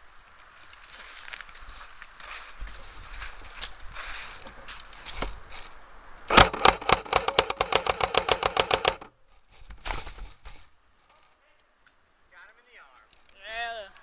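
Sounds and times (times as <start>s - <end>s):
rustling of movement: 0.0s - 11.6s
airsoft gun firing rapid burst: 6.3s - 9.1s.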